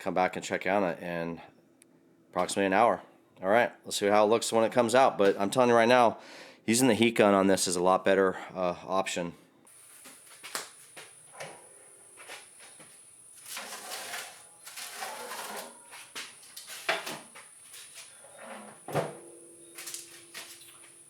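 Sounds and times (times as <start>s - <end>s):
faint high whine: 9.7s - 21.0s
objects being handled: 9.8s - 21.0s.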